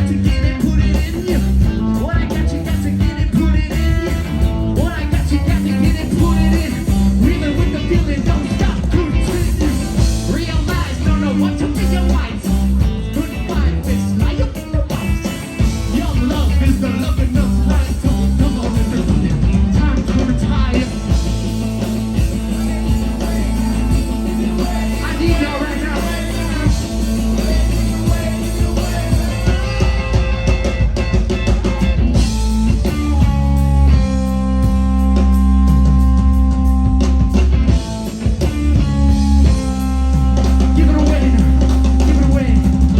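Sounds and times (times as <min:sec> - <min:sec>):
person singing: 0:00.0 - 0:32.0
bass guitar: 0:00.0 - 0:42.9
drum kit: 0:00.0 - 0:42.9
electric guitar: 0:00.0 - 0:42.9.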